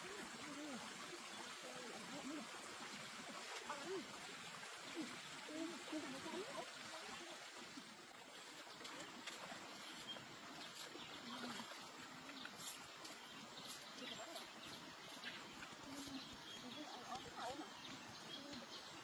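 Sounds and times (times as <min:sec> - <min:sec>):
stream water running: 0:00.0 - 0:19.0
faint children's voices: 0:13.6 - 0:19.0.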